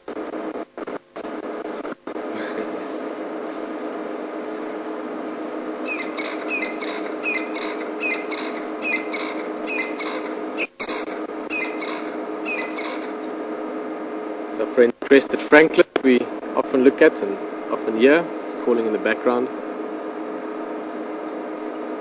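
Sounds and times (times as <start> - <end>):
steady electrical hum: 0.0 - 22.0
francolin calling: 5.8 - 13.3.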